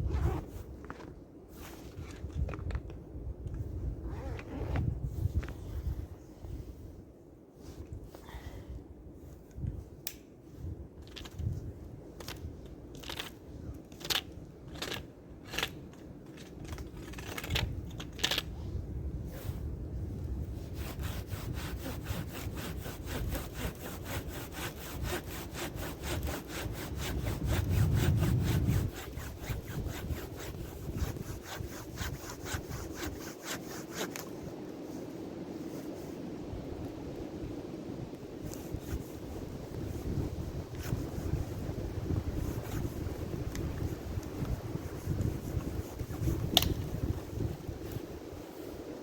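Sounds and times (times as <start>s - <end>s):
hand saw cutting stick: 20.8s - 34.3s, 42.2s - 47.0s.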